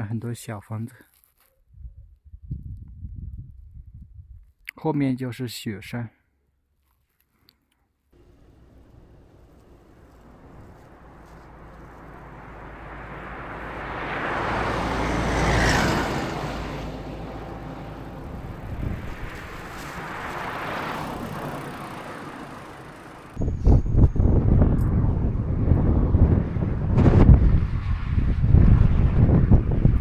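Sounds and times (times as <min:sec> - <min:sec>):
wind buffeting microphone: 0:01.7 - 0:04.5, 0:08.3 - 0:30.0
vehicle passing on road: 0:08.2 - 0:30.0.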